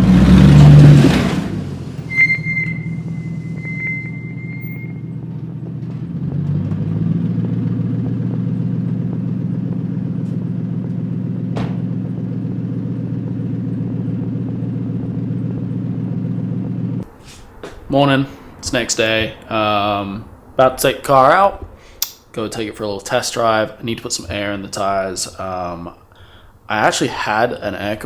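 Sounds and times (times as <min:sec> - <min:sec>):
car engine idling: 0:00.0 - 0:17.3.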